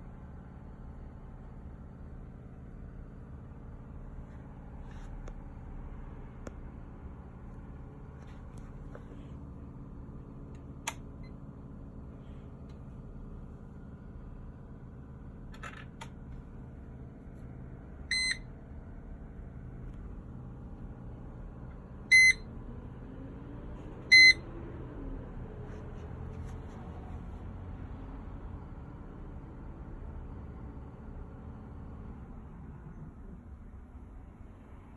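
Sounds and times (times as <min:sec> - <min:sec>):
steady low hum: 0:00.0 - 0:34.9
short high electronic beeps: 0:22.1 - 0:22.4, 0:24.1 - 0:24.4.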